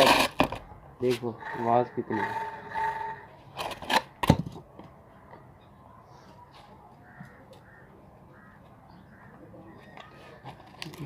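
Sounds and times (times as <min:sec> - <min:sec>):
crows cawing: 0:01.1 - 0:03.4, 0:07.0 - 0:10.3.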